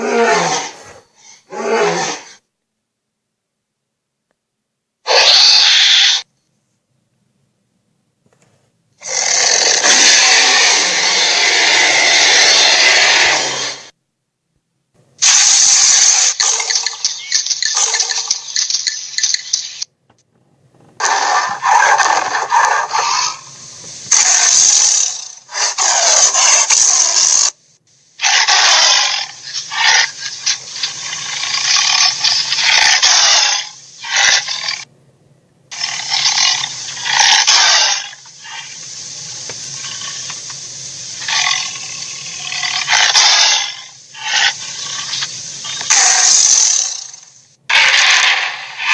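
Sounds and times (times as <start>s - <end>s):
dinosaur roars: 0.0s - 2.4s, 9.0s - 13.9s, 47.7s - 48.9s.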